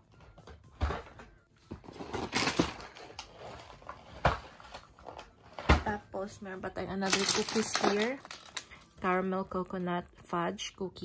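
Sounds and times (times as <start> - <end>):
plastic wrapping crinkling: 6.9 - 9.2.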